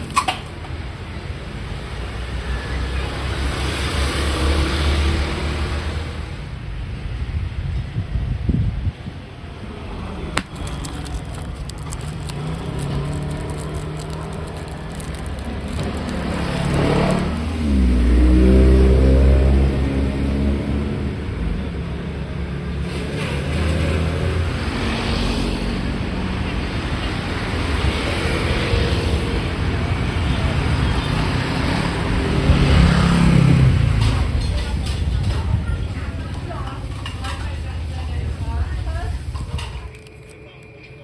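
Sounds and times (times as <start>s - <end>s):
vehicle engine running: 8.5s - 40.3s.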